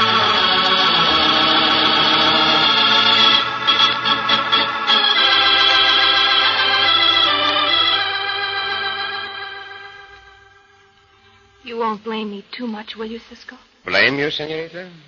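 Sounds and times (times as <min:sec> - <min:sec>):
organ music: 0:00.0 - 0:12.0.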